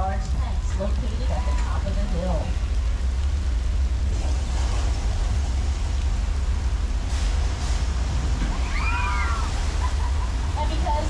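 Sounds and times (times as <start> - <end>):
rushing water: 0.0 - 11.0
tram rumble: 0.0 - 11.0.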